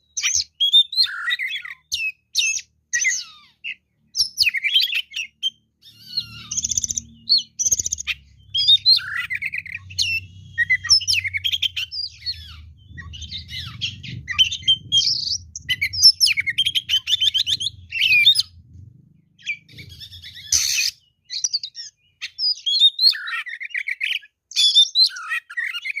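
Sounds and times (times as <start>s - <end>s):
bird singing: 0.0s - 26.0s
harsh bird call: 4.4s - 18.6s, 19.4s - 26.0s
low hum: 6.3s - 20.5s.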